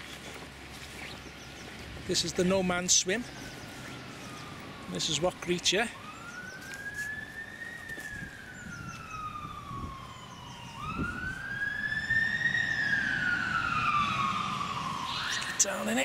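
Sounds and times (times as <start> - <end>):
emergency siren wailing: 2.0 - 16.0.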